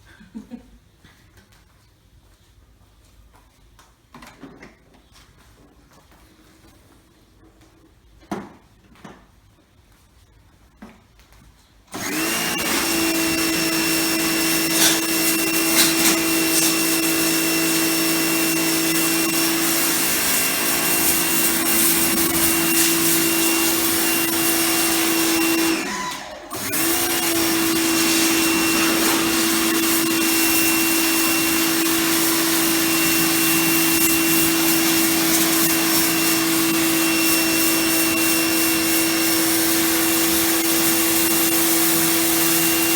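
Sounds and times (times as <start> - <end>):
pressure washer motor hum: 12.0 - 42.9
water jet hissing: 12.0 - 42.9.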